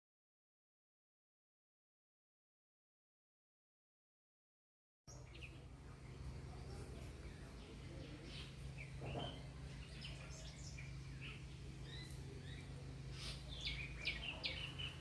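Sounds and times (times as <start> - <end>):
low background hum: 5.1 - 15.0
small birds chirping: 5.1 - 15.0.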